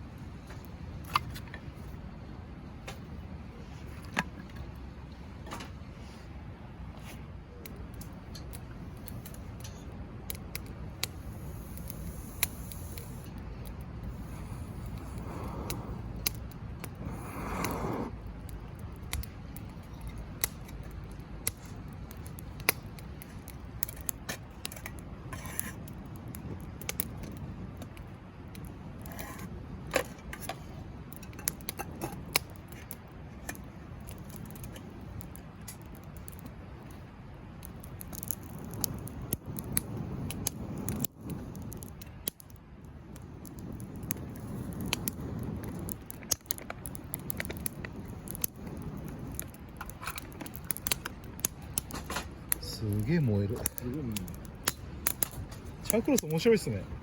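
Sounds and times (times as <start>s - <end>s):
campfire crackling and popping: 0.0s - 57.0s
whoosh of air: 11.0s - 18.5s.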